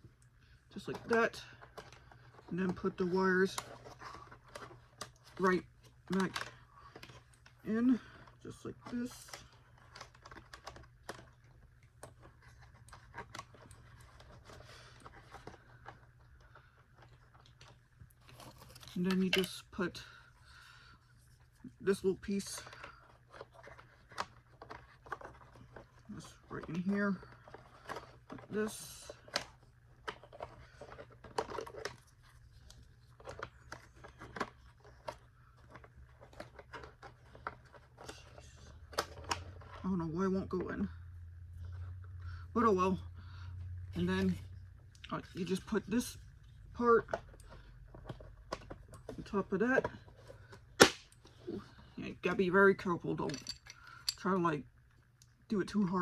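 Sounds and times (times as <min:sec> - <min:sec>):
low steady hum: 0:00.0 - 0:56.0
plastic parts clicking and tapping: 0:08.2 - 0:19.6, 0:53.3 - 0:54.2.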